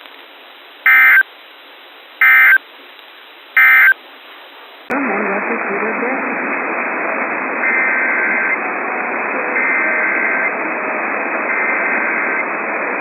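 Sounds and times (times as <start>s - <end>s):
radio static hiss: 0.0s - 13.0s
buzzy data tone warble: 0.9s - 1.2s, 2.2s - 2.6s, 3.6s - 4.0s, 7.6s - 8.6s, 9.5s - 10.6s.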